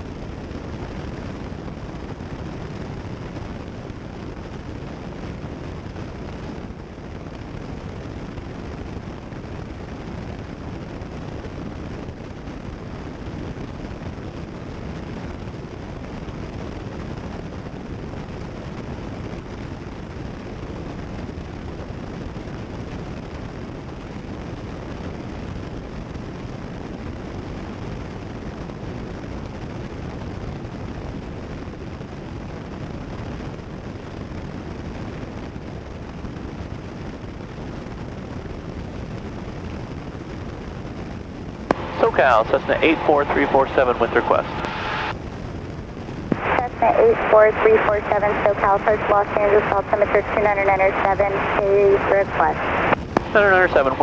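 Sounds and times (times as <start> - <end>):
airflow noise: 41.6 - 45.5, 46.1 - 54.0
aircraft engine and propeller drone: 41.7 - 45.2.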